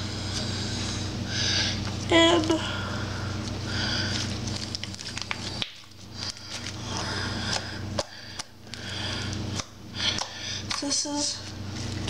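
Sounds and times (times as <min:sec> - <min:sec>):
slime squelching and crackling: 0:03.4 - 0:09.4.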